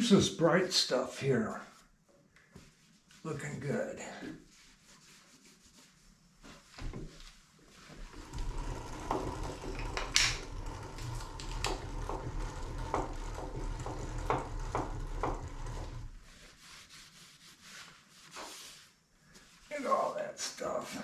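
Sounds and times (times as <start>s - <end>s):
rag rubbing on metal: 8.0s - 18.4s.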